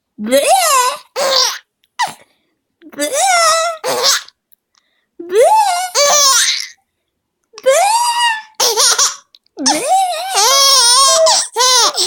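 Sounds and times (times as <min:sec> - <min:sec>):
baby laughing: 0:07.9 - 0:12.0.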